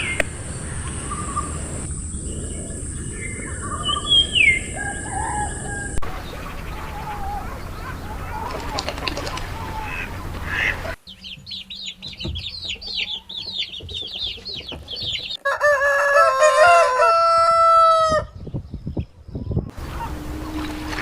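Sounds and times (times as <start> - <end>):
rooster crowing: 4.4 - 8.9, 15.4 - 18.4.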